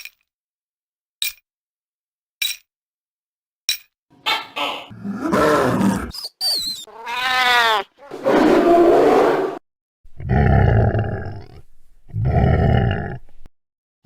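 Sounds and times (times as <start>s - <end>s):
pitched cry: 4.2s - 9.0s
monster roars: 4.9s - 6.1s, 10.2s - 11.5s, 12.1s - 13.2s.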